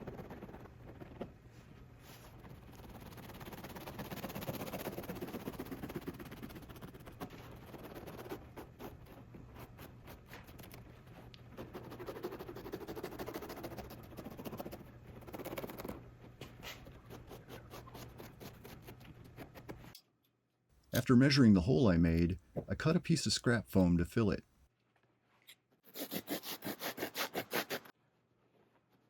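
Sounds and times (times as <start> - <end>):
blade cutting through foam: 2.3 - 10.7, 25.9 - 27.9.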